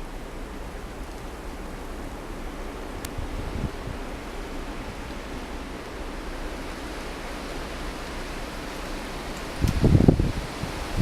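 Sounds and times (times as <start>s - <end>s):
blizzard wind blowing: 0.0s - 11.0s
wind gust buffeting microphone: 2.2s - 11.0s.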